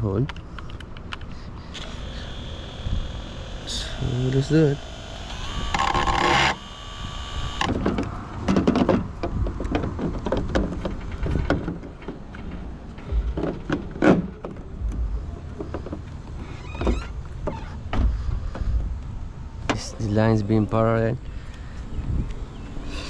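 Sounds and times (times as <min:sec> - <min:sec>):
steady whirring tone: 0:01.5 - 0:08.1.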